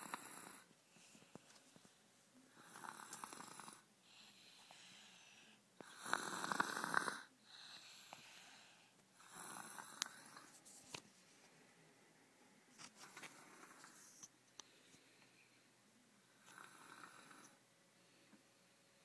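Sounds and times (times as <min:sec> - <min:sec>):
person snoring: 0:00.0 - 0:00.7, 0:02.5 - 0:03.9, 0:05.8 - 0:08.6, 0:09.2 - 0:10.5, 0:16.4 - 0:17.6
quiet breaths: 0:00.0 - 0:19.0.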